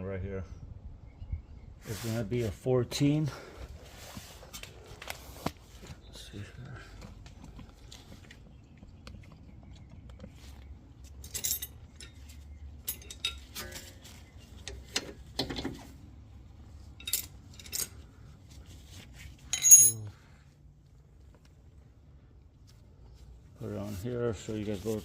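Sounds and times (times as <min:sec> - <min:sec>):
metal tool clinking on bolts: 0:11.2 - 0:14.0, 0:17.0 - 0:18.0, 0:19.5 - 0:20.1.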